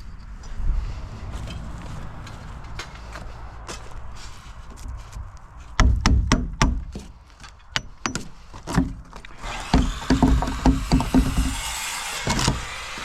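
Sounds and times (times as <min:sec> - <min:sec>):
wood being struck hard: 0:05.8 - 0:07.1, 0:07.8 - 0:13.0.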